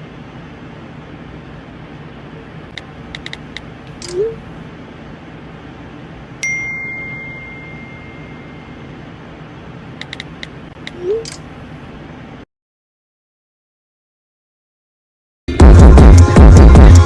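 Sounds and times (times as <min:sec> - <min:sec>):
steady low hum: 0:00.0 - 0:12.5
sharp clicks: 0:02.7 - 0:04.2, 0:10.0 - 0:11.4
bell-like ding: 0:06.4 - 0:08.8.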